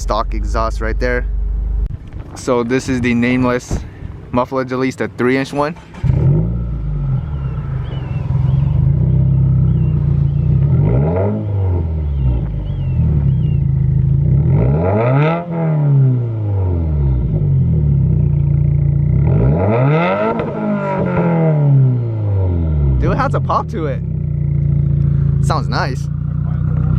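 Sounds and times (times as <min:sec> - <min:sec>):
car engine idling and revving: 0:00.0 - 0:26.9
faint bird chirps: 0:07.0 - 0:11.0, 0:12.0 - 0:14.0.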